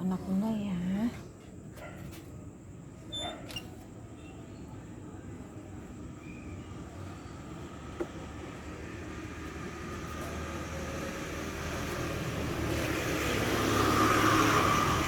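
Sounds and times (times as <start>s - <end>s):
vehicle approaching: 6.6s - 15.0s.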